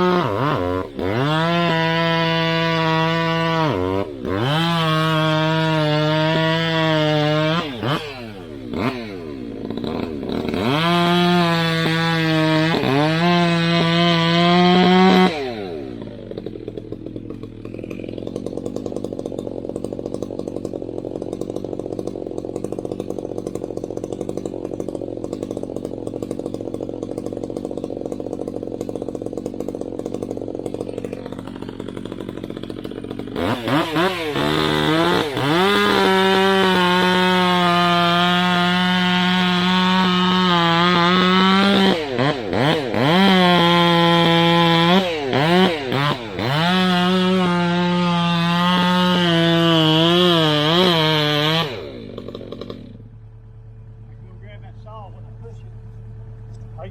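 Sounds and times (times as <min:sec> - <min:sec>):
chainsaw engine revving and idling: 0:00.0 - 0:56.9.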